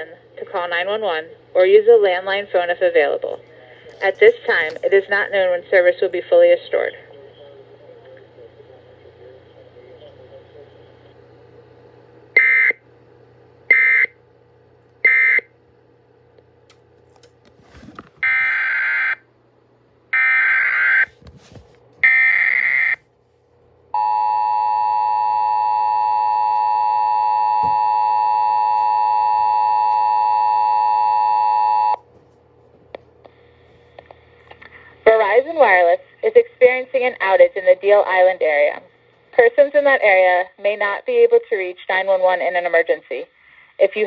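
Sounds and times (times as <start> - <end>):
two-tone attention signal: 24.0 - 32.0.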